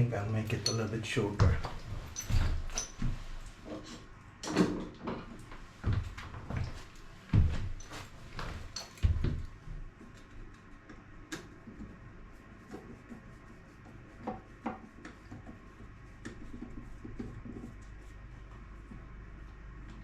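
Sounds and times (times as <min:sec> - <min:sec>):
steady low hum: 0:05.2 - 0:20.0.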